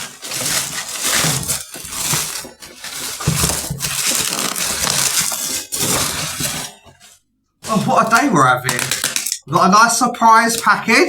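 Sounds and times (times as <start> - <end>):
cardboard box rustling and crinkling: 0.0 - 9.6.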